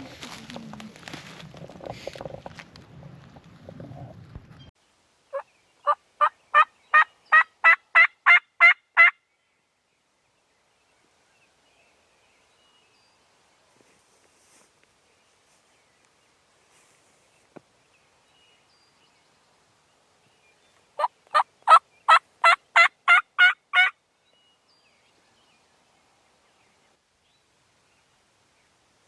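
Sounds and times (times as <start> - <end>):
turkey yelps: 5.3 - 9.1, 21.0 - 23.9.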